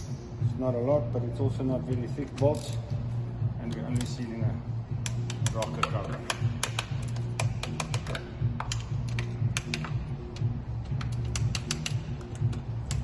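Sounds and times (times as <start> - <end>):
background music with bass line: 0.0 - 13.0
irregular sharp clicks: 5.0 - 13.0.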